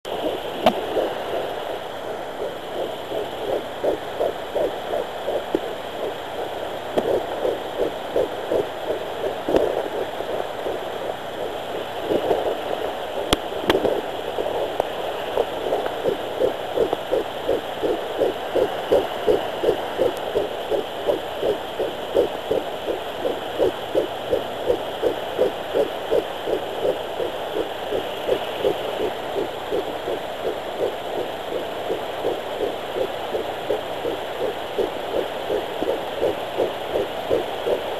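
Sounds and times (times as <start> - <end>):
doppler hiss: 0.1 - 37.9
fetal heartbeat on doppler: 0.1 - 37.9
doppler probe clicks: 0.6 - 1.1, 6.9 - 8.7, 13.2 - 17.2.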